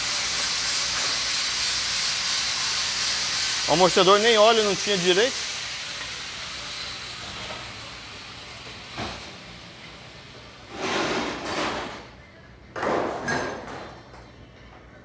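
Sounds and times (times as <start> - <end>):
hiss: 0.0 - 11.4.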